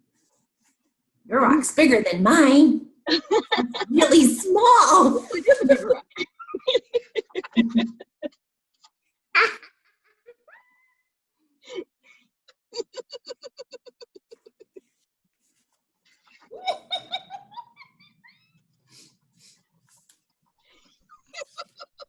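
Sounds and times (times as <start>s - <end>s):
woman laughing: 3.1s - 8.4s, 12.7s - 14.9s, 16.5s - 18.5s, 21.2s - 22.0s.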